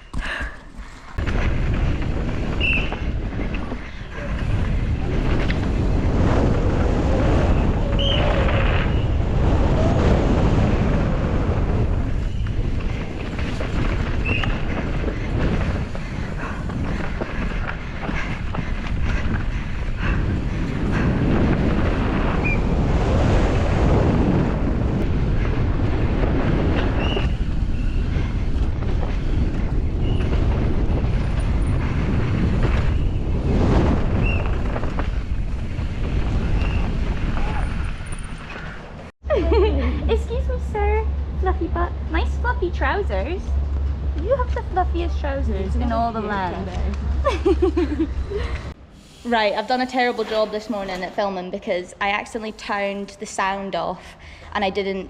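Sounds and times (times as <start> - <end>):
bike rattling over rough ground: 0.0 - 10.0, 10.6 - 22.8, 25.0 - 39.1
wind buffeting microphone: 0.0 - 55.0.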